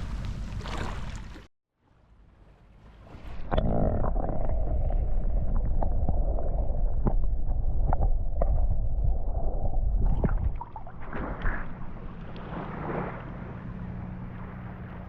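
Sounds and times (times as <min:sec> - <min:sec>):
sea waves at the shore: 0:00.0 - 0:03.6, 0:10.1 - 0:15.0.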